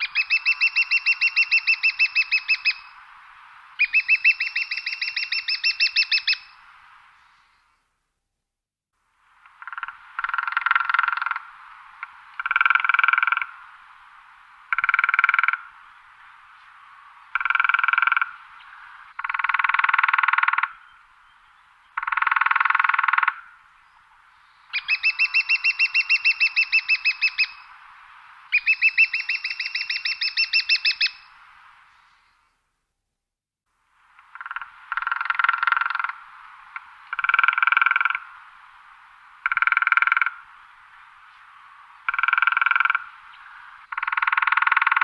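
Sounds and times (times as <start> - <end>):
woodpecker drumming on wood: 9.4 - 13.6, 17.4 - 18.4, 19.2 - 20.8, 22.0 - 23.5, 34.2 - 38.3, 39.4 - 40.4, 42.0 - 43.1, 43.9 - 45.0.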